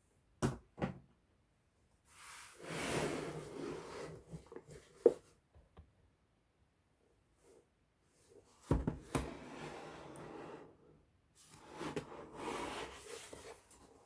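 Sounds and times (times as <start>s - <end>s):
laptop rubbing and sliding: 2.2s - 4.6s, 11.5s - 13.8s.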